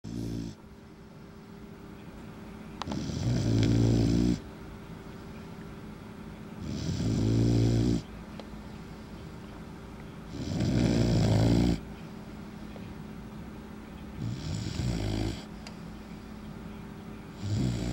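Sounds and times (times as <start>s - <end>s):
puppy snoring: 0.0s - 0.6s, 2.8s - 4.5s, 6.6s - 8.1s, 10.3s - 11.8s, 14.2s - 15.5s, 17.3s - 17.9s.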